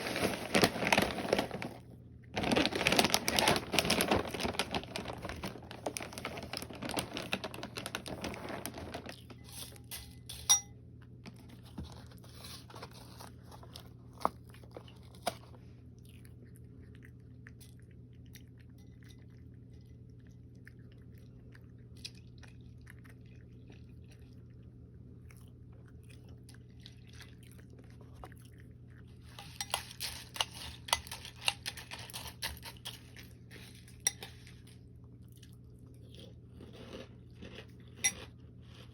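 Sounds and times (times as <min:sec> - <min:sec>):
crunchy chewing: 0:25.2 - 0:38.9.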